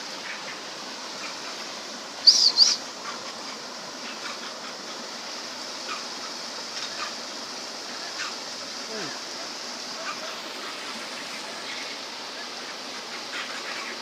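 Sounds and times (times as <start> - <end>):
river water rushing: 0.0 - 14.0
high-pitched bird calls: 2.2 - 2.8.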